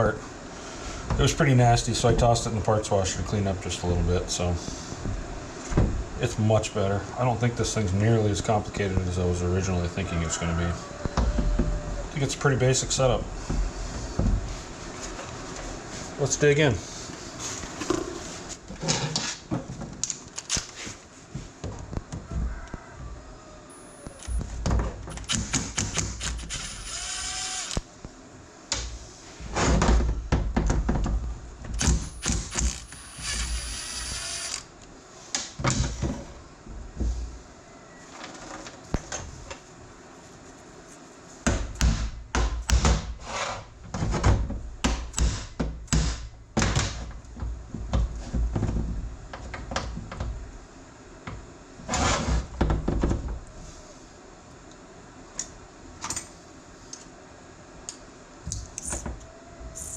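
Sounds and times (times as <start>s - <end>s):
tool grinding: 25.1s - 27.8s, 31.8s - 34.7s.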